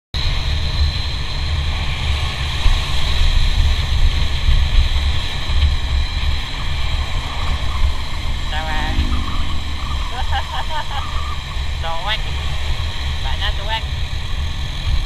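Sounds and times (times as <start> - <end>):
wind rumbling on microphone: 1.5 - 13.2.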